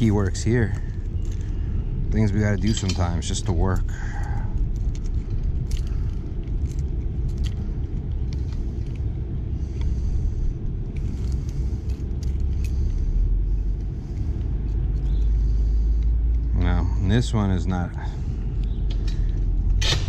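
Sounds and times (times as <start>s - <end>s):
steady low rumble: 0.0s - 20.0s
keys jingling against a padlock: 2.3s - 7.5s.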